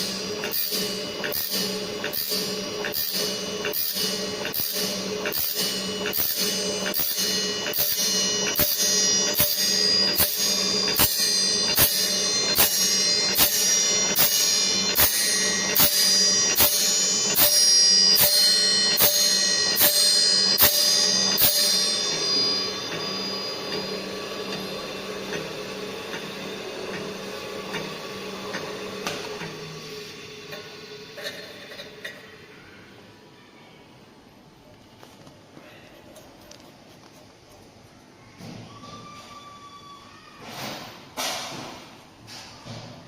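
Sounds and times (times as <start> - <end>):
steel saw blade ringing: 0.0 - 29.4
machine humming: 0.0 - 33.2.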